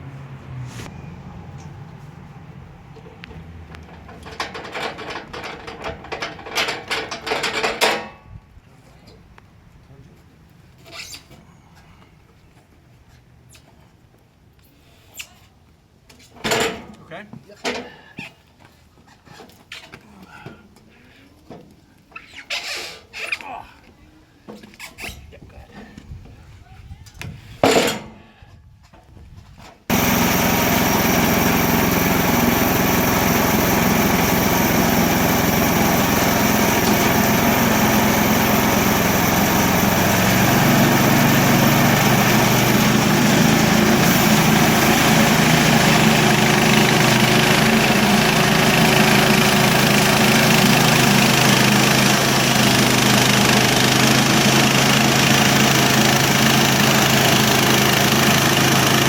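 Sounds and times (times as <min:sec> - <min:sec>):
gasoline engine running: 0:29.9 - 0:59.0.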